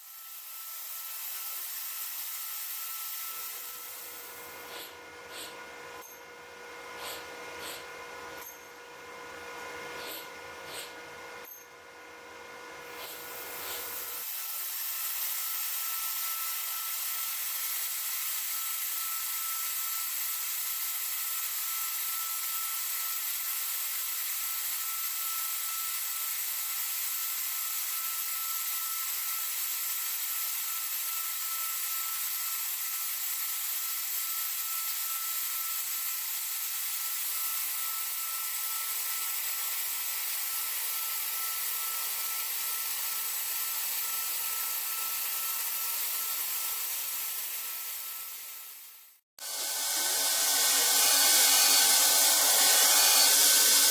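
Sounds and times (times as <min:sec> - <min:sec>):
cutting hiss: 0:03.5 - 0:05.6, 0:07.0 - 0:07.9, 0:10.0 - 0:11.0, 0:12.9 - 0:14.3, 0:49.4 - 0:53.9
milling machine spindle whine: 0:49.4 - 0:53.9.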